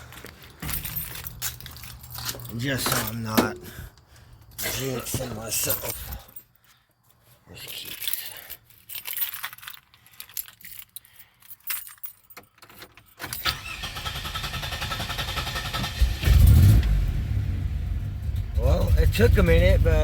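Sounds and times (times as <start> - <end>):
keys jangling: 0.0 - 3.4, 4.5 - 6.8, 7.6 - 13.4
car engine cranking and starting: 13.2 - 20.0.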